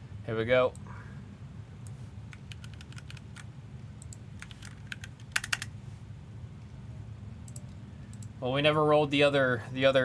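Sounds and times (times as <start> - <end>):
low steady hum: 0.0 - 10.0
keyboard key clicks: 2.4 - 5.7.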